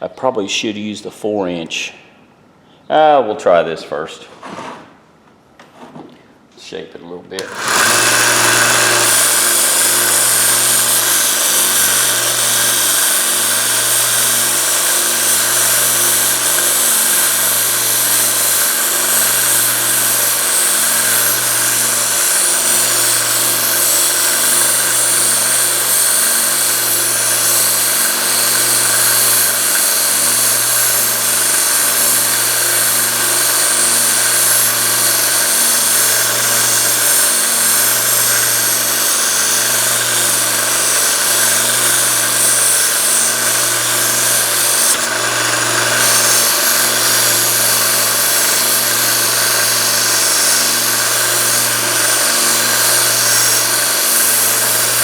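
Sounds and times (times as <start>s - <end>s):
belt sander motor hum: 7.4s - 55.0s
metal grinding hiss: 7.4s - 55.0s.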